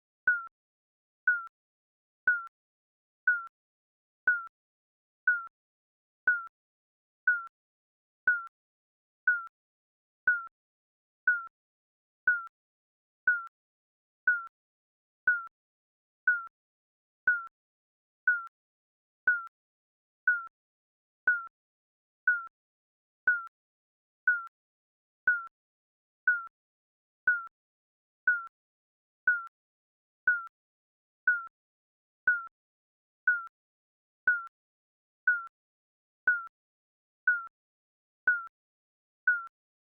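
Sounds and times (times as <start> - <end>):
timer beeps: 0.3 - 0.5, 1.3 - 1.5, 2.3 - 2.5, 3.3 - 3.5, 4.3 - 4.5, 5.3 - 5.5, 6.3 - 6.5, 7.3 - 7.5, 8.3 - 8.5, 9.3 - 9.5, 10.3 - 10.5, 11.3 - 11.5, 12.3 - 12.5, 13.3 - 13.5, 14.3 - 14.5, 15.3 - 15.5, 16.3 - 16.5, 17.3 - 17.5, 18.3 - 18.5, 19.3 - 19.5, 20.3 - 20.5, 21.3 - 21.5, 22.3 - 22.5, 23.3 - 23.5, 24.3 - 24.5, 25.3 - 25.5, 26.3 - 26.5, 27.3 - 27.5, 28.3 - 28.5, 29.3 - 29.5, 30.3 - 30.5, 31.3 - 31.5, 32.3 - 32.5, 33.3 - 33.5, 34.3 - 34.5, 35.3 - 35.5, 36.3 - 36.5, 37.3 - 37.5, 38.3 - 38.5, 39.3 - 39.5.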